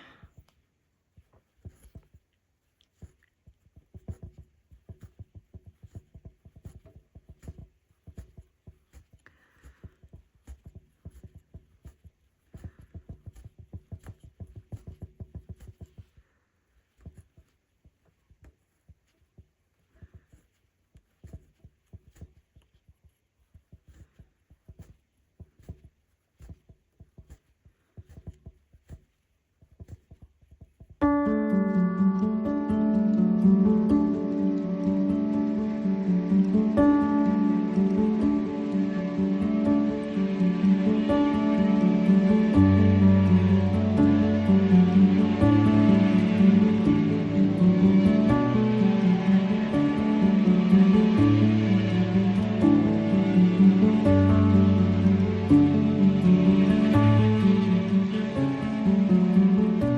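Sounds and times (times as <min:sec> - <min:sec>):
rug hook pulling wool loops: 0:00.0 - 0:31.4
instrumental background music: 0:31.0 - 0:59.9.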